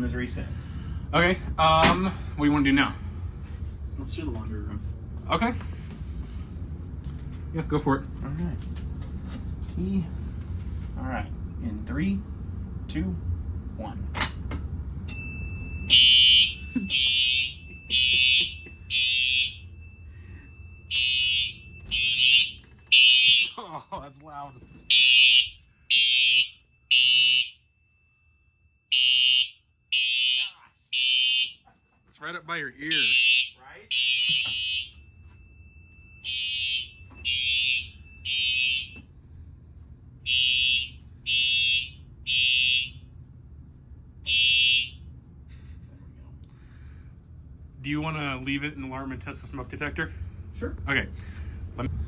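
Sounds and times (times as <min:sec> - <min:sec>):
fire alarm horn blasts: 0:15.1 - 0:39.2, 0:40.2 - 0:43.2, 0:44.2 - 0:45.2.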